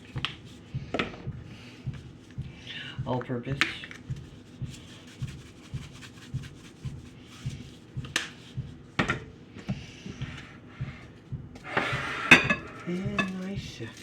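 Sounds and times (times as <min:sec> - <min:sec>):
seasoning shaker shaking: 0:03.8 - 0:08.6, 0:12.7 - 0:14.0.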